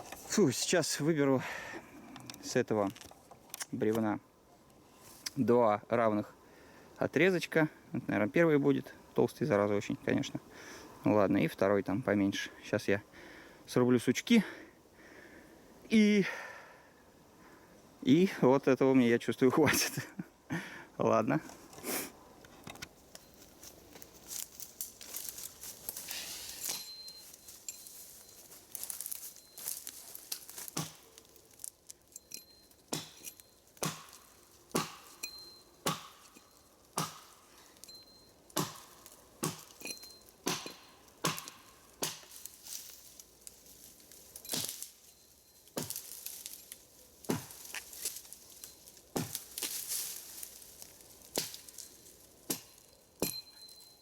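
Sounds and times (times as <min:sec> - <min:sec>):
axe chopping wood: 0:30.7 - 0:31.2, 0:32.9 - 0:37.5, 0:38.5 - 0:42.5, 0:45.8 - 0:46.3, 0:47.2 - 0:48.2, 0:49.1 - 0:49.9, 0:51.3 - 0:51.8, 0:52.4 - 0:53.5.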